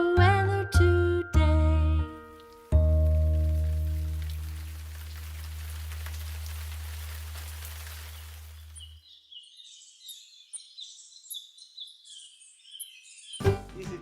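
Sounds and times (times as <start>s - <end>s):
rain-like hiss: 2.2s - 9.0s
small birds chirping: 2.4s - 14.0s.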